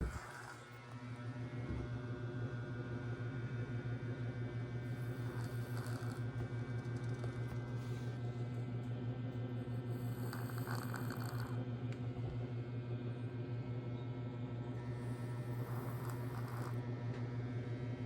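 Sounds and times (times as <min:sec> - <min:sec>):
cat snoring: 0:00.0 - 0:00.8, 0:04.9 - 0:08.2, 0:09.7 - 0:11.7, 0:14.9 - 0:16.8.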